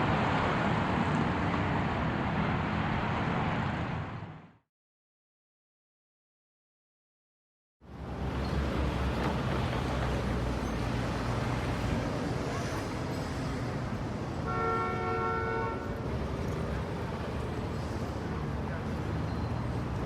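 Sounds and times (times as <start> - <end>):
car horn: 14.4 - 16.0.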